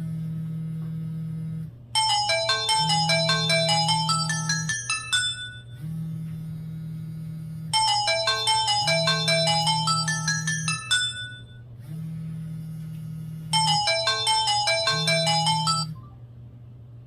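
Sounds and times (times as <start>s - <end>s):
mobile phone ringtone: 2.0s - 5.9s, 7.8s - 11.6s, 13.6s - 16.0s.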